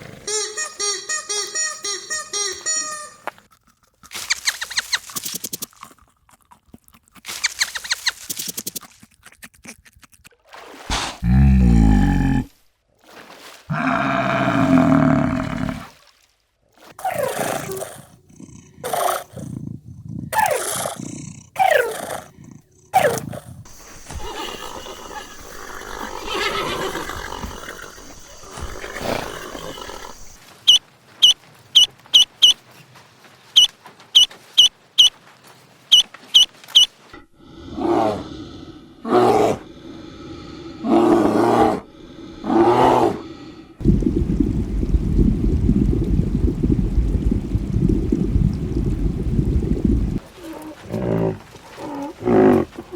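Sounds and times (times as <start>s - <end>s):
animal calls: 0.0s - 3.3s, 20.3s - 32.6s, 33.6s - 35.2s, 35.9s - 43.7s.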